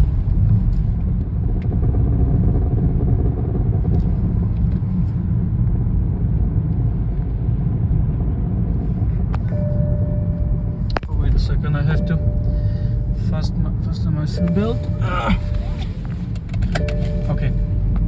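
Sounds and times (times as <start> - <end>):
car engine rumbling: 0.0 - 18.0
seatbelt warning chime: 9.5 - 18.0.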